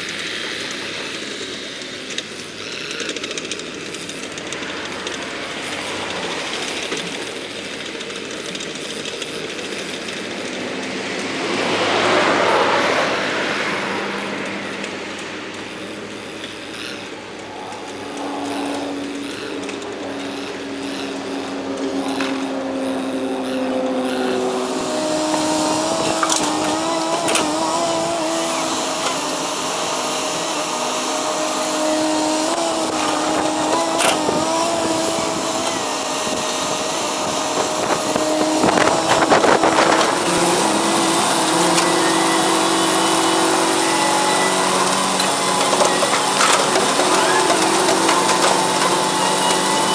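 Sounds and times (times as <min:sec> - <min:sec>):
construction machinery engine whine: 0:00.0 - 0:49.9
loud rattling burst: 0:24.3 - 0:49.9.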